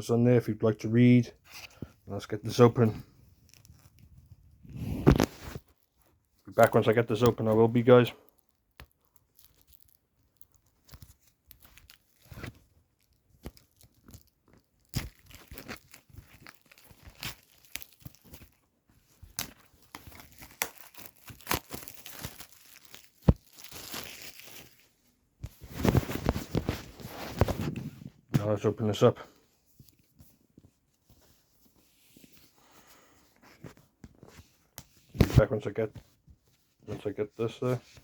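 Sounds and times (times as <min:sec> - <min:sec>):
plastic wrap crinkling and tearing: 0:01.5 - 0:28.1.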